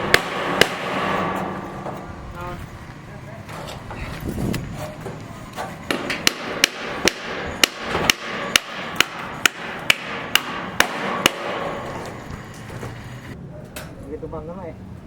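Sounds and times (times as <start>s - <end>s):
hammer striking: 0.0s - 2.2s, 5.9s - 13.1s.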